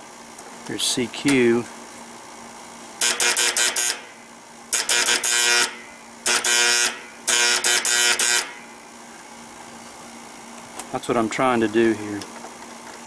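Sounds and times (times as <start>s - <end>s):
electrical contactor buzzing and clicking: 0.3s - 1.8s, 2.9s - 9.3s, 10.5s - 13.0s.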